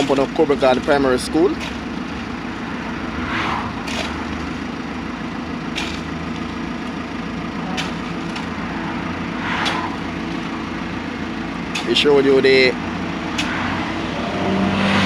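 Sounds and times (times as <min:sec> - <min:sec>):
vehicle engine running: 0:00.0 - 0:15.0
vehicle passing: 0:01.0 - 0:05.4, 0:07.6 - 0:15.0.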